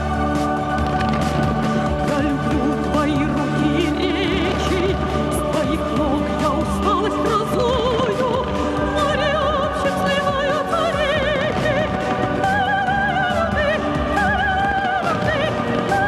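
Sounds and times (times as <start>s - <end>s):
operatic singing: 0.0s - 16.0s
orchestral accompaniment: 0.0s - 16.0s.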